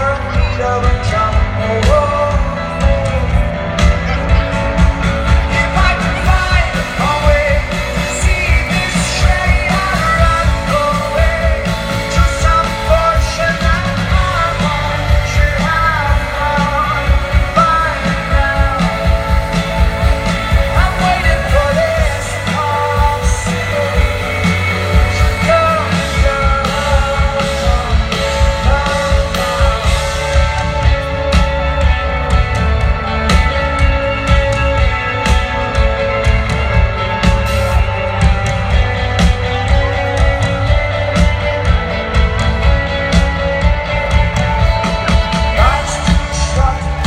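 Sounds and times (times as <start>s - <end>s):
rock song with singing: 0.0s - 47.0s
steady drum beat: 0.0s - 47.0s.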